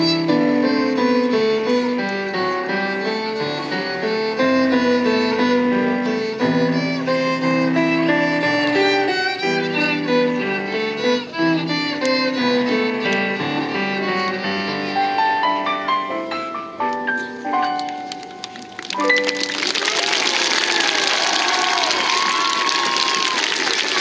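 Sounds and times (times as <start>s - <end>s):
violin melody with vibrato: 0.0s - 15.9s
piano accompaniment: 0.0s - 24.0s.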